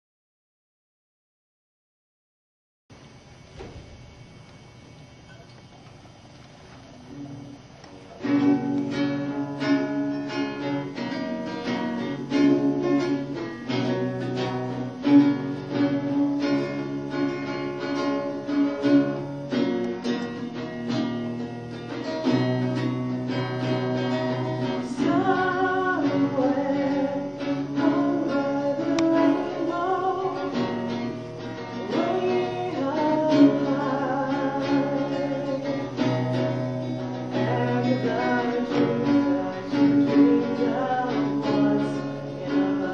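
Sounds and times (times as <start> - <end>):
acoustic guitar strumming: 3.0 - 42.9
person singing: 8.2 - 19.2, 22.3 - 42.9.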